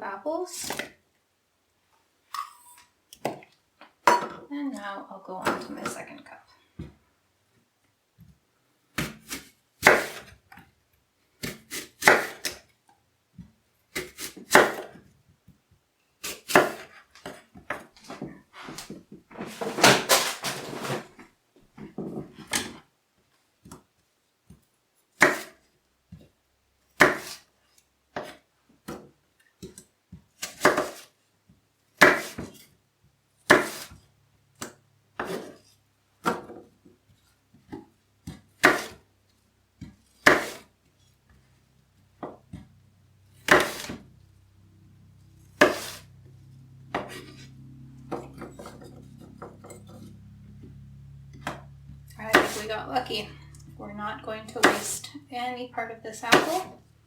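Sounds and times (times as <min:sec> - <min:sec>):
knife chopping on cutting board: 0:09.0 - 0:10.3, 0:11.4 - 0:12.6, 0:13.9 - 0:15.0, 0:16.2 - 0:17.8, 0:25.2 - 0:25.6, 0:27.0 - 0:27.5, 0:30.4 - 0:31.1, 0:32.0 - 0:32.5, 0:33.5 - 0:34.0, 0:34.6 - 0:35.6, 0:38.2 - 0:39.0, 0:39.8 - 0:40.7, 0:43.4 - 0:44.0, 0:45.6 - 0:46.1, 0:46.9 - 0:47.4, 0:52.3 - 0:52.8, 0:54.5 - 0:55.1, 0:56.2 - 0:56.8.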